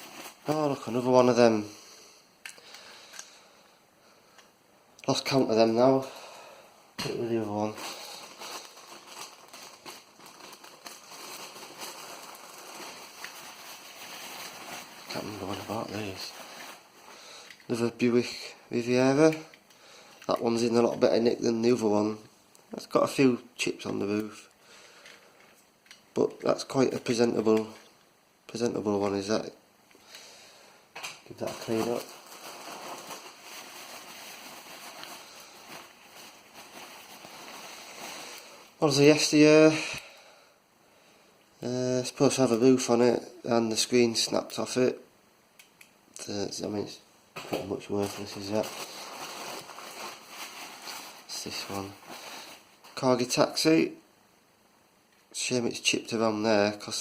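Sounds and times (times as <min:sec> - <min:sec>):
faint rustling: 0:05.2 - 0:22.2, 0:31.2 - 0:40.0, 0:47.4 - 0:53.4.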